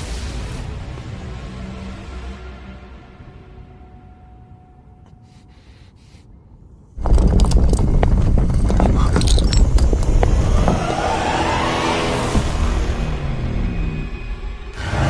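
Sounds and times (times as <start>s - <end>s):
loud rumble with rattling: 7.0s - 15.0s
rising whoosh: 10.2s - 14.8s.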